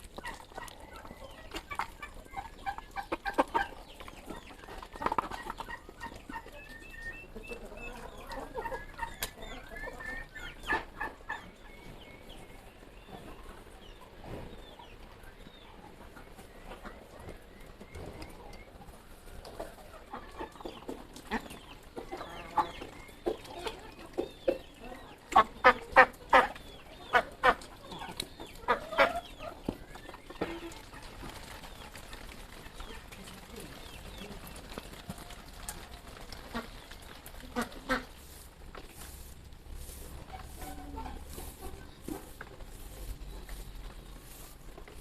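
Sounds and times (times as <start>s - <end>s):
chickens cackling loudly: 0.0s - 45.0s
chickens clucking: 0.0s - 45.0s.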